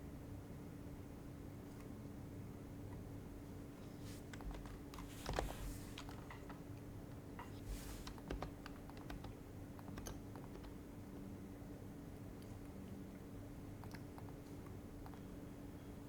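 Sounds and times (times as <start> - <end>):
soft muted keyboard typing: 4.0 - 11.1, 13.7 - 15.4.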